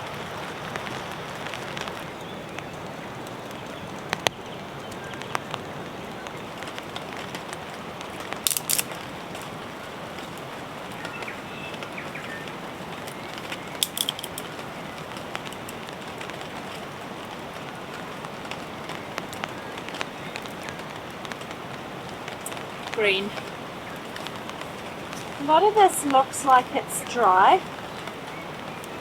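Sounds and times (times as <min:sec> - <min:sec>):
steady rain falling: 0:00.0 - 0:29.0
sharp cracks: 0:06.6 - 0:11.9, 0:12.5 - 0:16.9.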